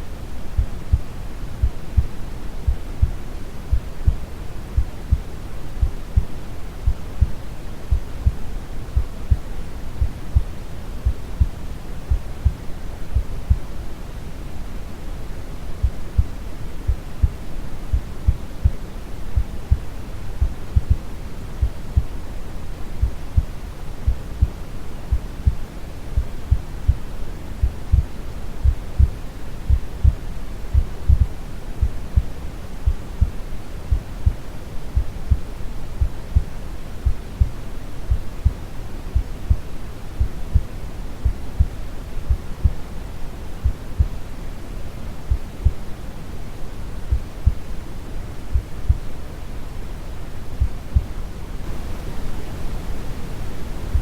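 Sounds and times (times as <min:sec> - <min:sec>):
steady low brown noise: 0:00.0 - 0:54.0
heartbeat thumping: 0:00.6 - 0:12.6, 0:13.2 - 0:13.7, 0:15.8 - 0:18.8, 0:19.4 - 0:22.2, 0:23.0 - 0:25.6, 0:27.6 - 0:34.4, 0:35.0 - 0:38.6, 0:39.2 - 0:42.8, 0:43.6 - 0:44.2, 0:45.3 - 0:45.8, 0:47.1 - 0:47.7, 0:48.5 - 0:49.1, 0:50.6 - 0:51.9.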